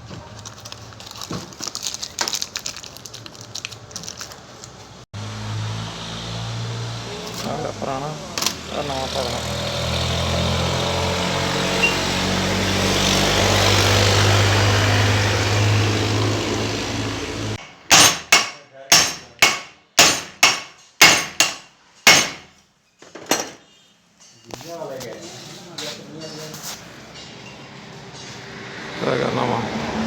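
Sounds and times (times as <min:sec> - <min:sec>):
vehicle engine humming: 0:05.2 - 0:17.9
hammer blows: 0:17.6 - 0:22.6.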